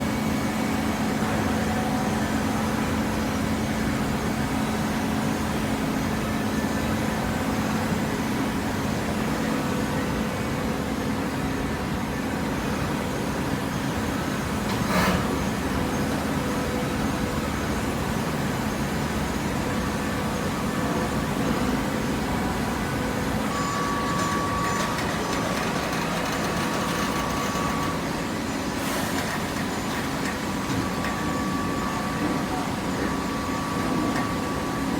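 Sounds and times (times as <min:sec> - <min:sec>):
machine humming: 0:14.4 - 0:34.9.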